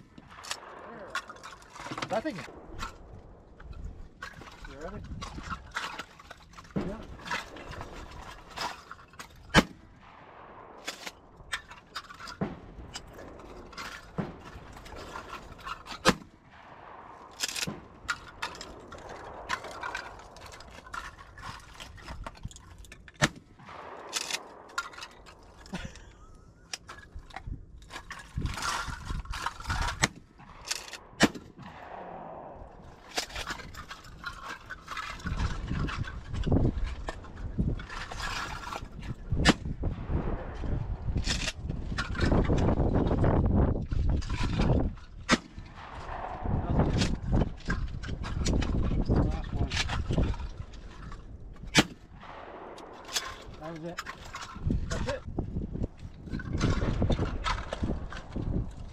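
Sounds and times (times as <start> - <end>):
wind noise: 0.0 - 58.9
shotgun shots: 12.4 - 21.4, 23.2 - 25.7, 29.9 - 33.4, 45.3 - 48.3, 51.7 - 54.2.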